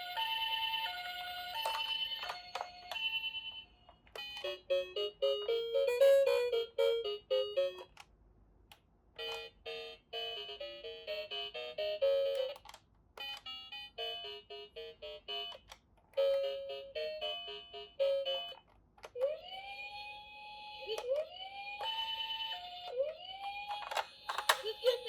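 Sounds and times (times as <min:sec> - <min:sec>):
siren wailing: 0:19.2 - 0:24.2.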